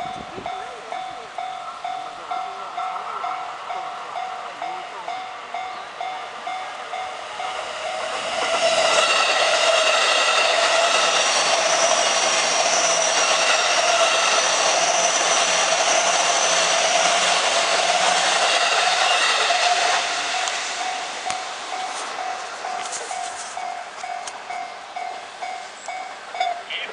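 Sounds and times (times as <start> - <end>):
level crossing warning bell: 0.0 - 11.6, 20.3 - 26.9
train wheel and running noise: 0.0 - 26.9.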